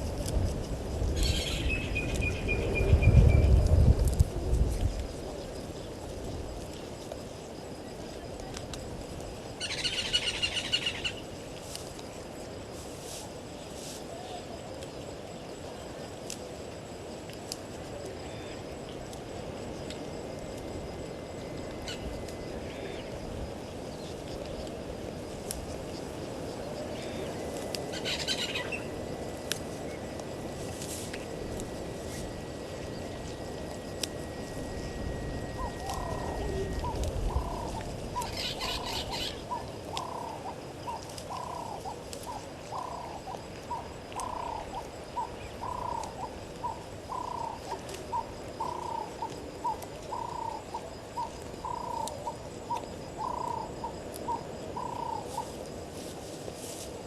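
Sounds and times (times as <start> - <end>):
bush ambience: 0.0 - 57.0
birds chattering calls: 9.6 - 11.2, 27.9 - 28.9, 35.6 - 41.9.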